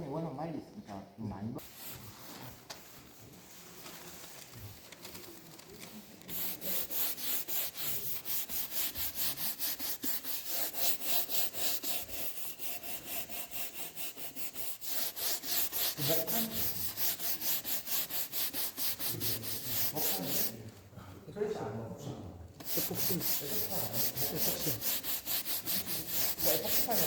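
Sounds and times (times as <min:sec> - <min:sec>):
rapid rubbing or sanding strokes: 0:01.6 - 0:03.2, 0:06.3 - 0:20.6, 0:22.6 - 0:27.0.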